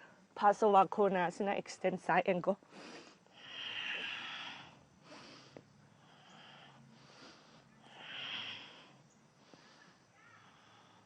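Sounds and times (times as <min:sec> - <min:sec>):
person breathing deeply: 0:02.7 - 0:11.0.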